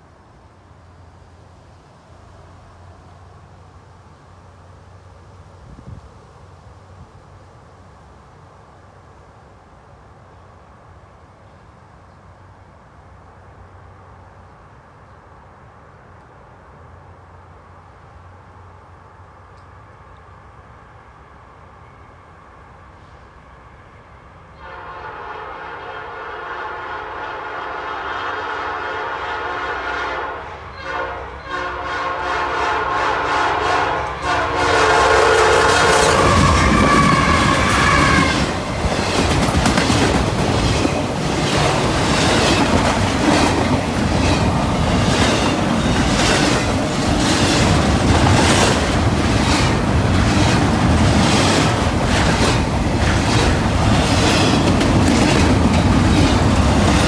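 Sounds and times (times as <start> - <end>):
freight train rumble: 0.0 - 57.0
locomotive air horn blasts: 24.6 - 38.5.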